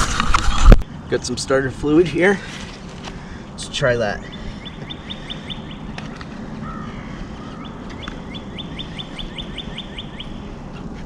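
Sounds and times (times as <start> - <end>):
outdoor background noise: 0.0 - 11.0
small bird chirping: 4.2 - 10.5.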